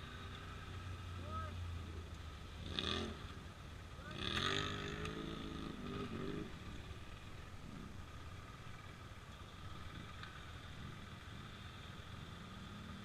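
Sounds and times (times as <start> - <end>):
quad bike engine revving: 2.6 - 3.3, 4.0 - 7.0.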